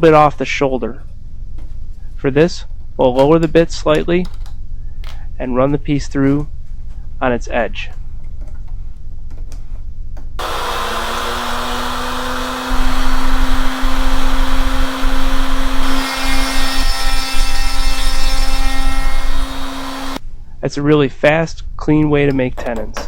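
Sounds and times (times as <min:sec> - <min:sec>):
router bit cutting wood: 0:10.4 - 0:20.2
router humming: 0:10.4 - 0:20.2.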